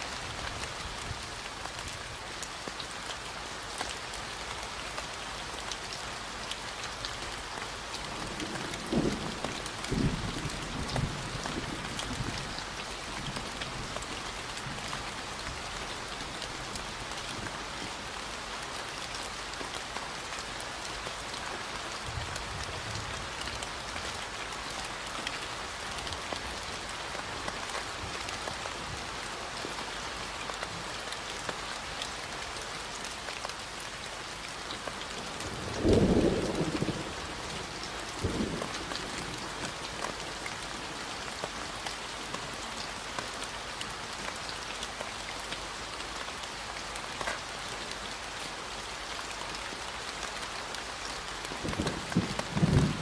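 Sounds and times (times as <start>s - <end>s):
steady rain: 0.0s - 53.0s
thunder rumbling: 51.6s - 53.0s.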